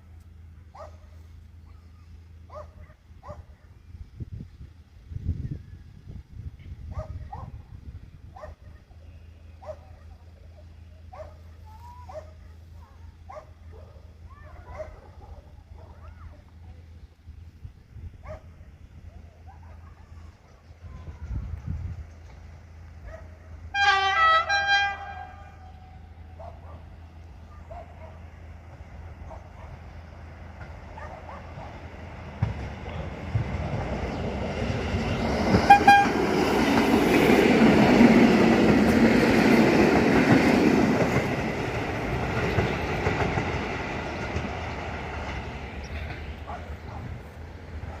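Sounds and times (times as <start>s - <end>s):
train wheels rumbling on rails: 15.6s - 48.0s
train horn toot: 23.6s - 26.3s, 35.5s - 36.5s.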